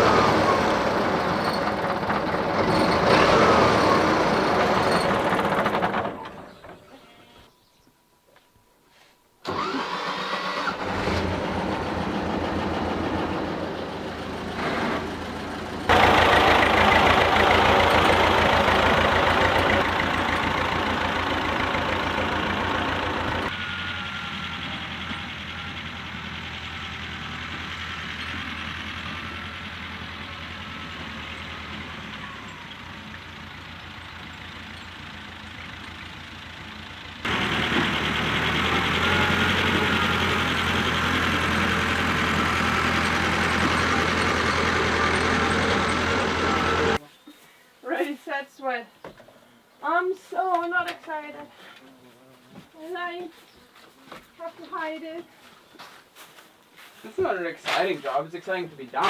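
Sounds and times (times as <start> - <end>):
tractor engine running: 0.0 - 7.0, 9.4 - 47.0.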